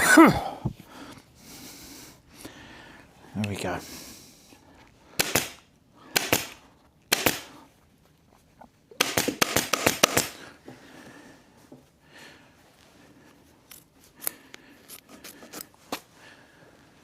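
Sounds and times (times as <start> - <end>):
staple gun firing: 5.2 - 5.6, 6.2 - 7.5, 9.0 - 10.4.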